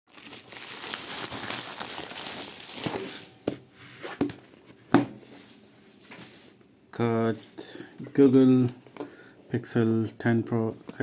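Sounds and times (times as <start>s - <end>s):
packaging rustling and crinkling: 0.1s - 3.5s.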